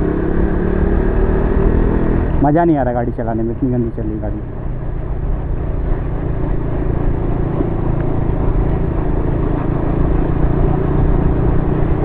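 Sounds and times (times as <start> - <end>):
motorcycle engine running: 0.0 - 12.0
road noise: 0.0 - 12.0
person talking: 2.4 - 4.4.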